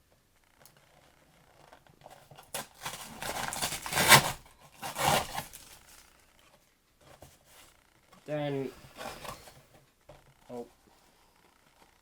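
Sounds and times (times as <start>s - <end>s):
plastic film peeling and crinkling: 2.2s - 6.3s.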